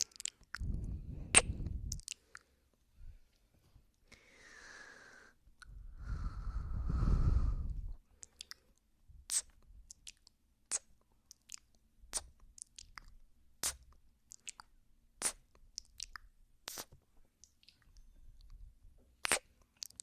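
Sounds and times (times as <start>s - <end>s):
wet kissing mouth sounds: 1.3s - 2.4s, 9.3s - 17.9s, 19.2s - 20.0s.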